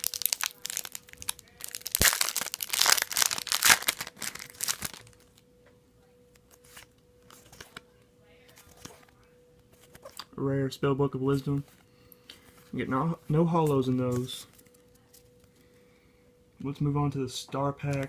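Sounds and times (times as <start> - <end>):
foil wrapper crinkling and tearing: 0.0 - 5.4.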